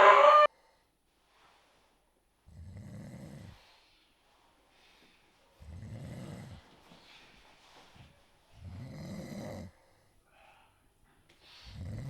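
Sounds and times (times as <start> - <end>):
soft breathing: 3.4 - 12.0.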